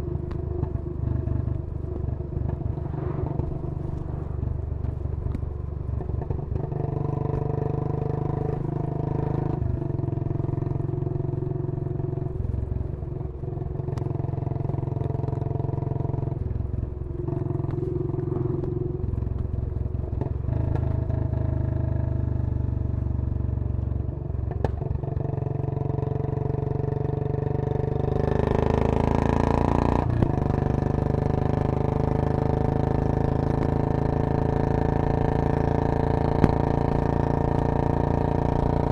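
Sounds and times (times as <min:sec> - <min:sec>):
motorcycle engine revving: 0:24.6 - 0:38.9.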